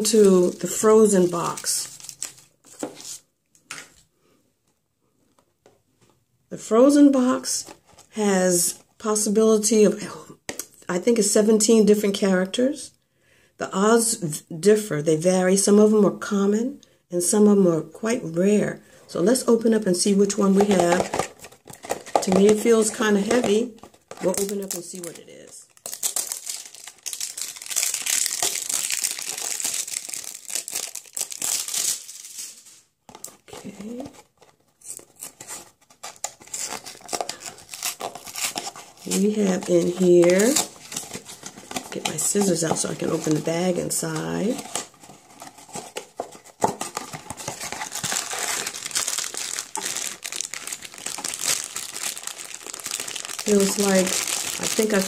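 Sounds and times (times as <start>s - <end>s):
packaging crinkling and rustling: 0.0s - 4.0s, 20.3s - 55.0s.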